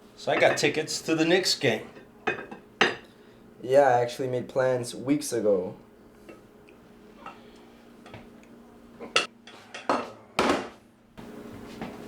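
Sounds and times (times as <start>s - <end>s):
faint room hum: 0.0s - 12.0s
cutlery scraping on plates: 9.0s - 10.2s.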